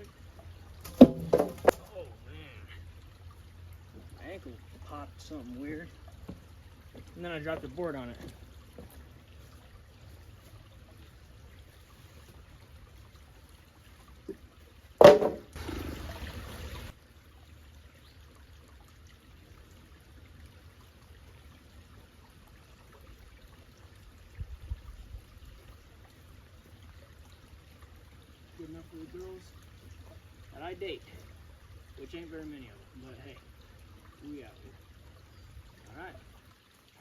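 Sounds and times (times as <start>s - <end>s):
loud knock: 15.0s - 15.5s.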